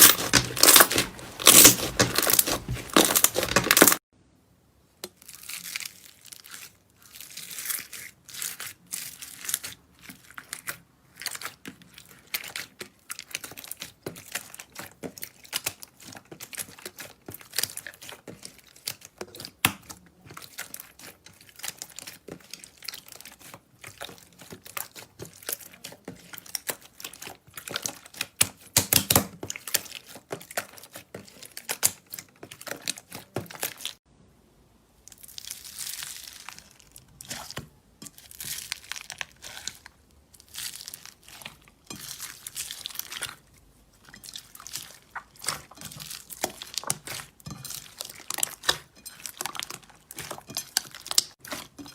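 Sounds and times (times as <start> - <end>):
slime crackling and popping: 0.0 - 4.0, 35.1 - 51.9.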